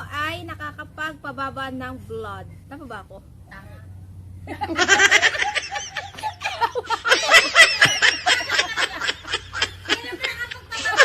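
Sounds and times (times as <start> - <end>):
people laughing: 4.5 - 11.0.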